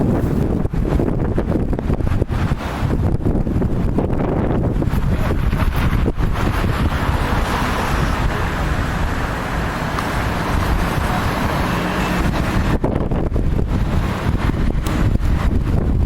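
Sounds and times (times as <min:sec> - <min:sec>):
wind buffeting microphone: 0:00.0 - 0:16.0
car passing: 0:05.2 - 0:15.3.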